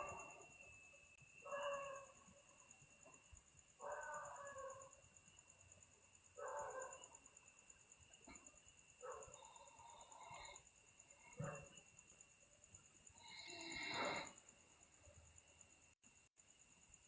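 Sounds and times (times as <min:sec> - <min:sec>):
girl snoring: 0:13.2 - 0:14.4.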